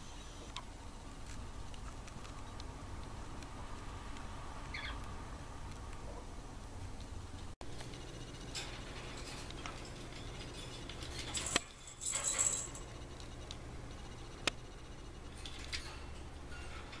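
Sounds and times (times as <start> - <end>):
steady low hum: 0.0 - 17.0
budgerigar chirping: 4.7 - 5.0.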